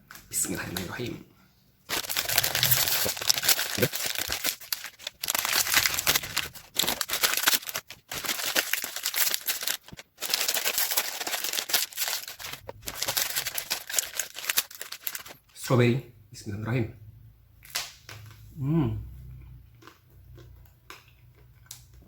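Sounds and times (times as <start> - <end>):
wrappers crinkling: 1.9 - 15.6.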